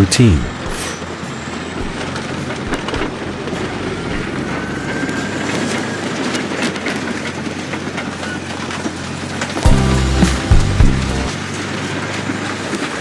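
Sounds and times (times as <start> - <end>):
heavy diesel engine drone: 9.7 - 11.4.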